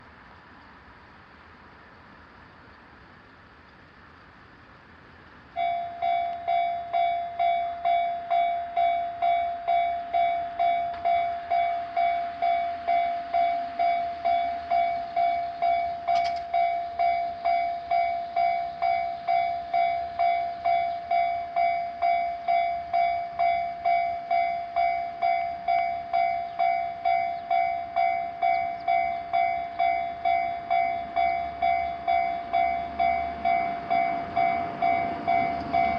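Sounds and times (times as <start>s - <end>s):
level-crossing electronic bell alarm: 5.6s - 35.9s.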